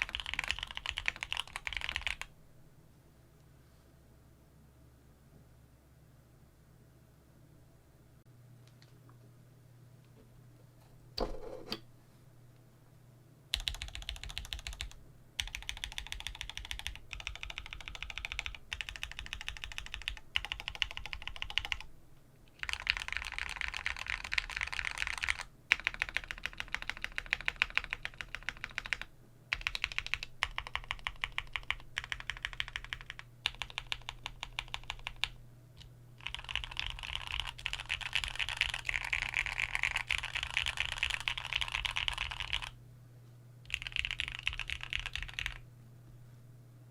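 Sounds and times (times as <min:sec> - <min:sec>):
mechanical keyboard typing: 0:00.0 - 0:02.3, 0:13.5 - 0:21.9, 0:22.6 - 0:35.4, 0:36.2 - 0:42.8, 0:43.7 - 0:45.6.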